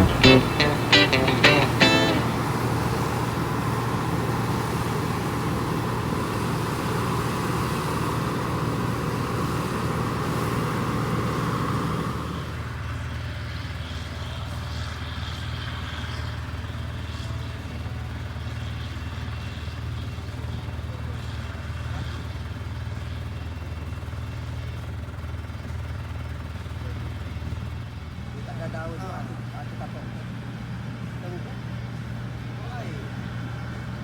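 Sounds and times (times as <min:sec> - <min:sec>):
loud machinery noise: 0:00.0 - 0:15.2
combine harvester engine running: 0:00.0 - 0:28.3.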